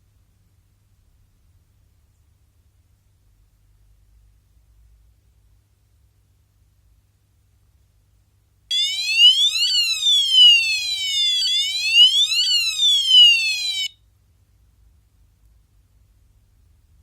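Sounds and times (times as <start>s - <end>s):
buzzy wailing siren alarm: 8.7s - 13.9s.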